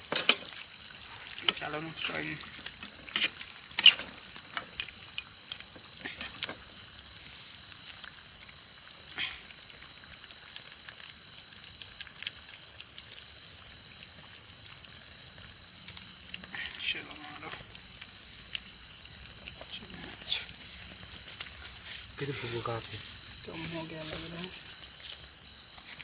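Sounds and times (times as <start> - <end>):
crickets chirping: 0.0 - 26.0.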